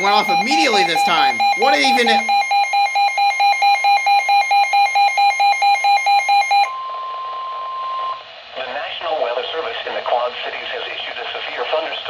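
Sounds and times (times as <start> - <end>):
steady alert tone: 0.0 - 2.6
weather radio alert beeping: 0.0 - 2.9.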